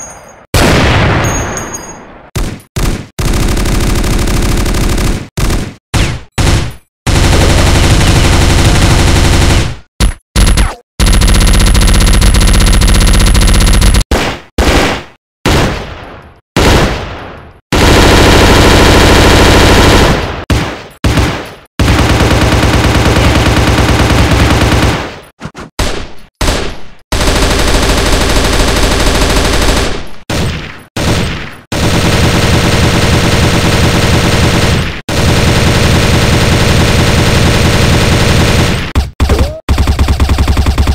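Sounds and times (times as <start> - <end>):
automatic gunfire: 2.4 - 9.7, 10.4 - 15.8, 17.7 - 25.2, 25.8 - 40.9
single gunshots: 14.1 - 17.4.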